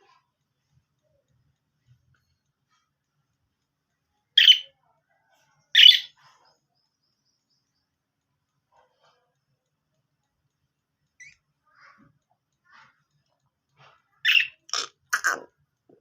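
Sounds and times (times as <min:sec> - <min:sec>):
parrot calling: 0:04.4 - 0:04.7, 0:05.8 - 0:06.2, 0:14.2 - 0:15.5.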